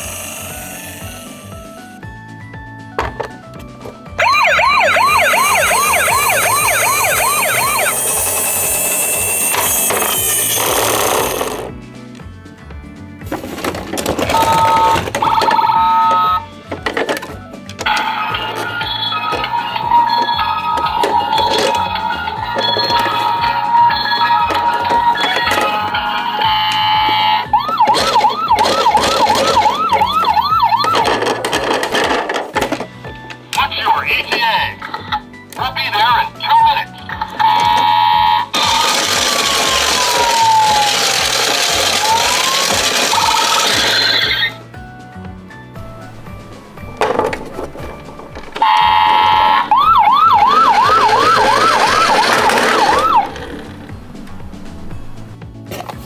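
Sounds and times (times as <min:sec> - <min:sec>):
background music: 0:00.0 - 0:56.0
electronic siren whoop: 0:04.2 - 0:10.6, 0:17.9 - 0:31.3, 0:37.5 - 0:44.5, 0:48.6 - 0:53.4.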